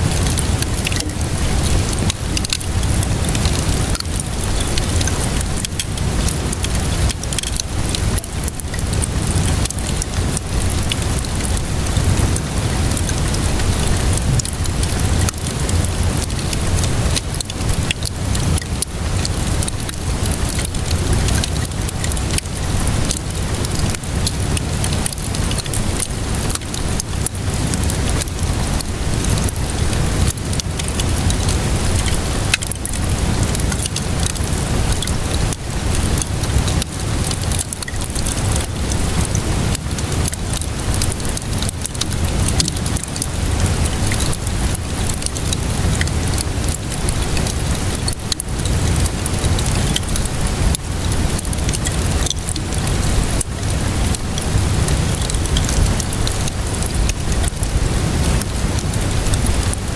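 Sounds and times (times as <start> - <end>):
steady rainfall: 0.0 - 59.9
wood fire crackling: 0.0 - 59.9.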